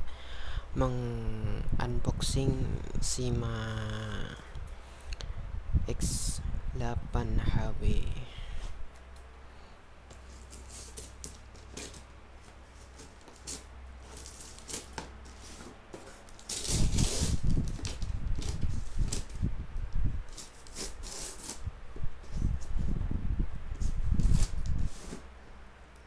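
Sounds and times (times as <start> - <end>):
low steady hum: 0.0 - 26.0
packaging taps and rustles: 10.1 - 19.4.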